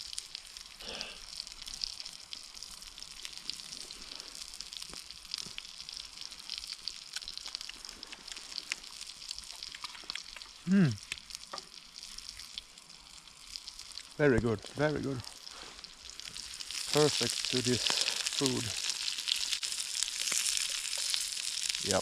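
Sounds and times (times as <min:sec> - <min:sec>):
patties sizzling in a frying pan: 0:00.0 - 0:22.0
low voice: 0:10.7 - 0:11.0.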